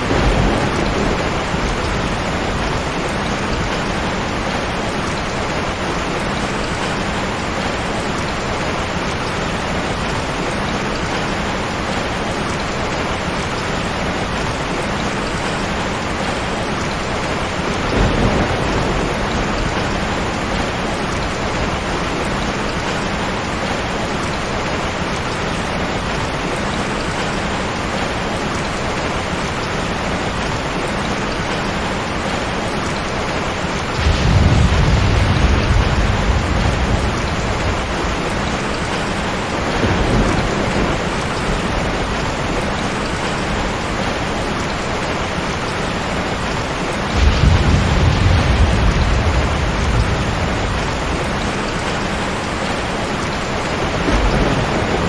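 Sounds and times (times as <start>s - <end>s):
thunder rumble: 0.0s - 8.0s, 16.1s - 22.9s, 33.6s - 44.0s, 46.5s - 55.0s
heavy rain: 0.0s - 55.0s.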